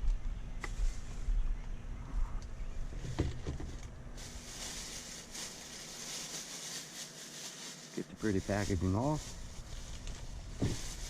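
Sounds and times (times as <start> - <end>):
rustling packaging: 3.1 - 11.0.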